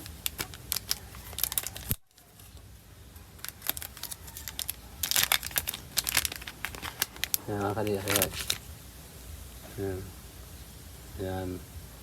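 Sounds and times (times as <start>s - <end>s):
electronic parts clicking and rattling: 3.4s - 8.6s.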